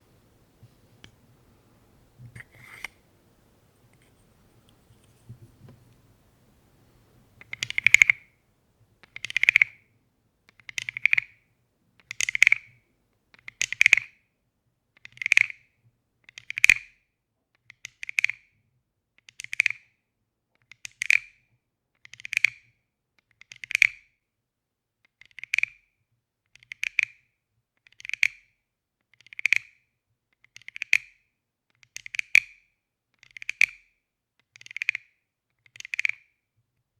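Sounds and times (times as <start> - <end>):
wooden frog toy rasping croaks: 2.3 - 3.1, 7.4 - 8.2, 9.1 - 9.8
faint taps: 3.8 - 6.2.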